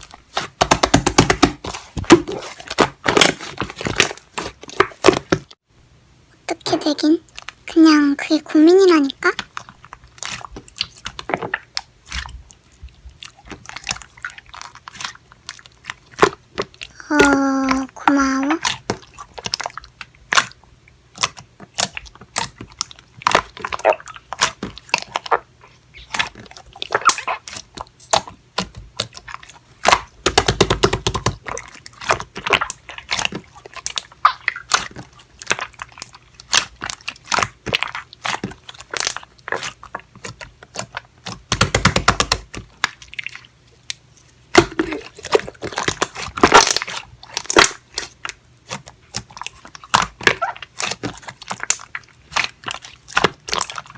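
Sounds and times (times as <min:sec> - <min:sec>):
slime squishing: 0:00.0 - 0:05.6, 0:06.4 - 0:53.9.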